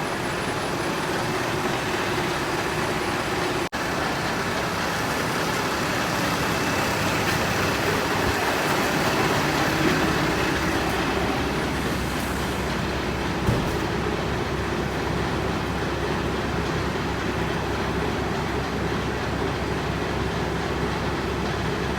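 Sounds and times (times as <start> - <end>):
vehicle engines idling: 0.0 - 21.9.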